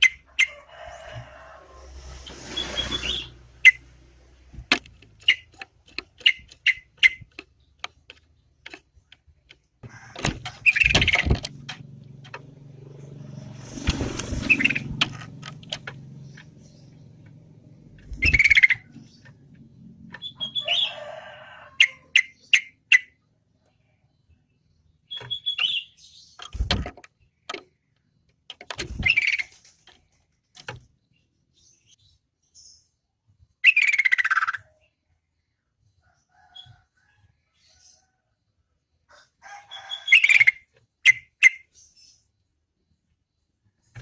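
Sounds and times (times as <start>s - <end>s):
bird calling: 5.0s - 11.8s, 13.3s - 23.2s.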